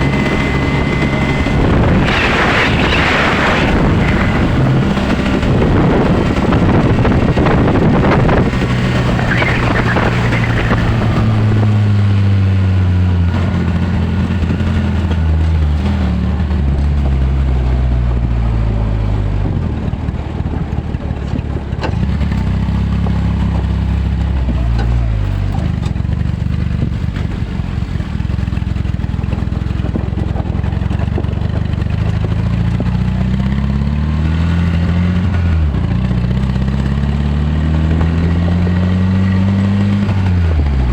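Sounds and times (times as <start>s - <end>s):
rushing noise: 0.0s - 14.7s
vehicle engine revving: 0.0s - 40.9s.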